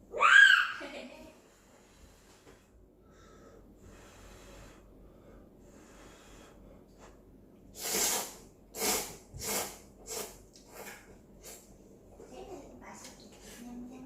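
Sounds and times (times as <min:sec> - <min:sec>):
loud noodle slurps: 0:07.8 - 0:11.6.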